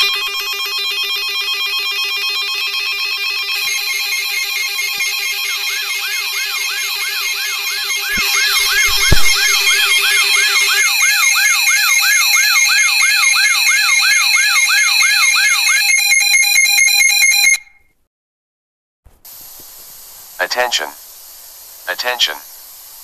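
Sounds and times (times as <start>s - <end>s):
wailing siren: 0.0s - 17.7s
beeping alarm tones: 0.0s - 17.8s
low thud: 8.2s - 10.0s.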